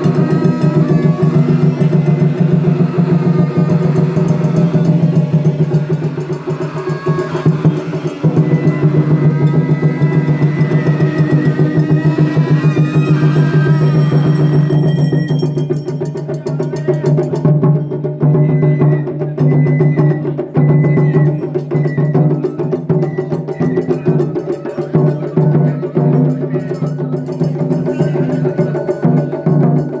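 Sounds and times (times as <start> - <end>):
high notes over drumming: 0.0 - 17.8
taiko drums beating: 0.0 - 30.0.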